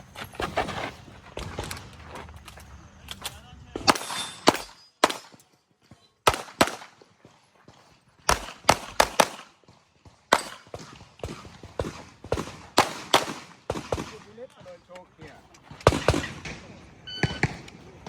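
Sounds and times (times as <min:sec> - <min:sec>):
handgun shots with echo: 0:03.8 - 0:05.4, 0:08.3 - 0:09.5, 0:10.3 - 0:14.4.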